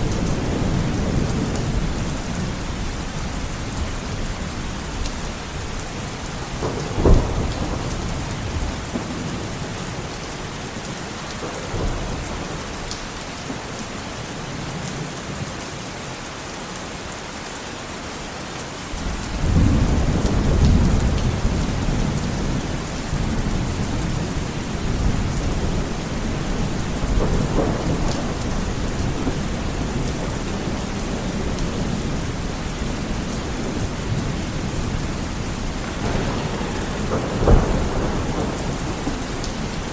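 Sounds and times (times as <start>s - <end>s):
thunder rumbling: 0.0s - 10.0s, 19.0s - 39.9s
heavy rain falling: 0.0s - 39.9s
thunder crack: 6.6s - 9.2s, 35.7s - 39.9s.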